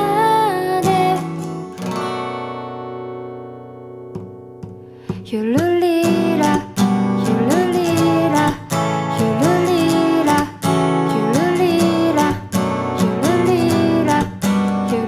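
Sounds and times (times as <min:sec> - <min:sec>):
person singing: 0:00.0 - 0:01.7, 0:05.1 - 0:15.0
guitar pop song: 0:00.0 - 0:15.0.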